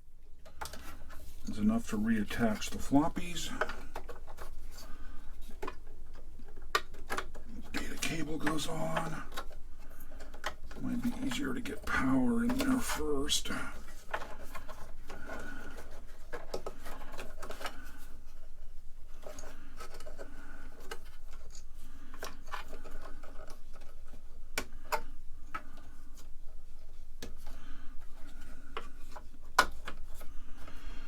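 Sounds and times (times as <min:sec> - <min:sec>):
cables rubbing: 0:10.2 - 0:17.9.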